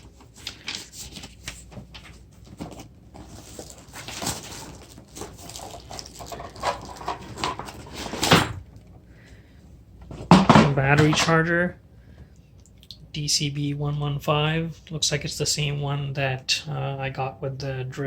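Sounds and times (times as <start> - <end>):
packaging rustling: 0.0 - 8.6.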